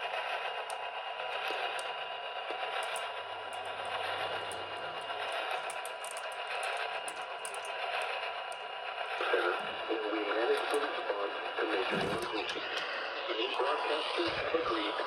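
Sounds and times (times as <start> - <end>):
crackles: 0.4 - 11.0
radio static hiss: 9.1 - 15.0.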